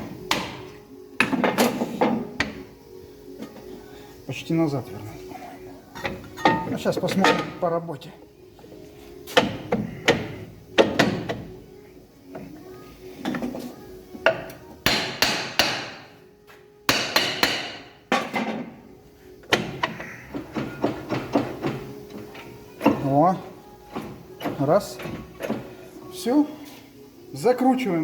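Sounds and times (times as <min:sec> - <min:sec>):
hammer striking metal: 0:14.3 - 0:16.1, 0:16.9 - 0:18.0.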